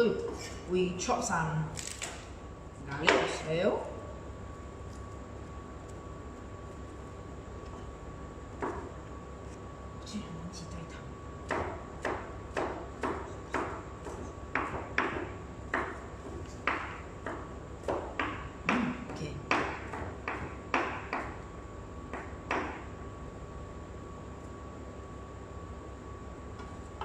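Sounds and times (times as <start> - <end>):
knife chopping on cutting board: 11.4 - 21.4.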